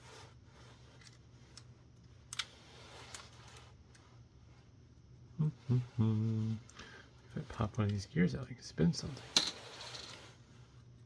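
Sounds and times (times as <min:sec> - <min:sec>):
small parts clicking and tapping: 0:00.9 - 0:04.0, 0:07.6 - 0:08.6.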